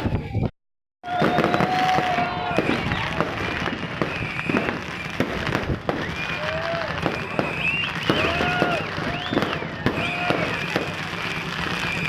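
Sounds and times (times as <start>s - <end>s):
fireworks whistling: 0.0s - 12.0s
fireworks popping and crackling: 1.1s - 12.0s.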